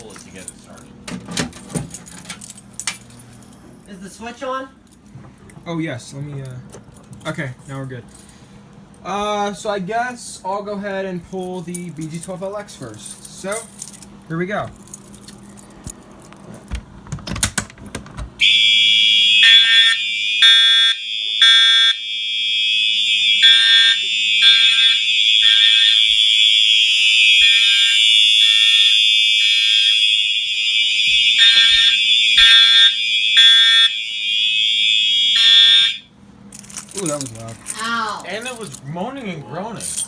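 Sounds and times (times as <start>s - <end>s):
fire alarm pull station clatter: 0.0s - 3.4s, 17.2s - 36.0s
high-pitched alarm tone: 18.4s - 36.1s
moaning alarm horns pulsing: 18.4s - 36.2s.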